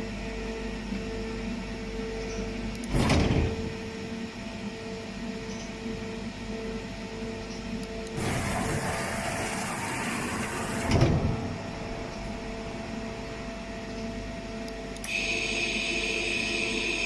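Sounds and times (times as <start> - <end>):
high steady whine: 0.0 - 17.0
steady mechanical hum: 0.0 - 17.0
machine hiss: 8.2 - 11.4.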